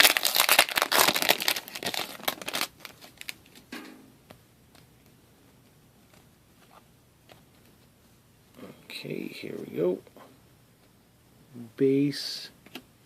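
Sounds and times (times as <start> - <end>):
wrapper crinkling and tearing: 0.0 - 3.6.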